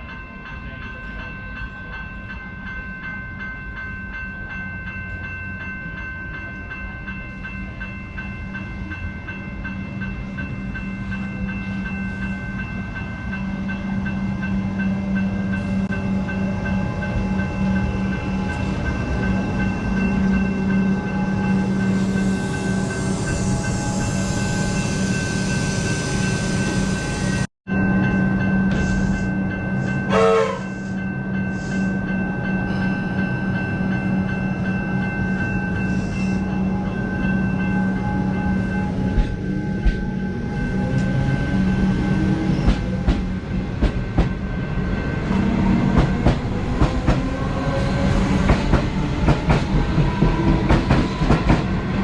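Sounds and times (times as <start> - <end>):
train approaching: 0.0 - 52.0
steady high tones: 6.9 - 42.6.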